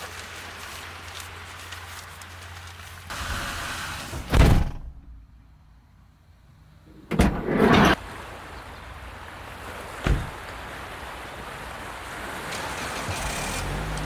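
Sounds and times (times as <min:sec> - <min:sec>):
outside noise: 0:00.0 - 0:14.0
car door shutting: 0:04.0 - 0:05.1, 0:07.0 - 0:08.0, 0:10.0 - 0:10.4.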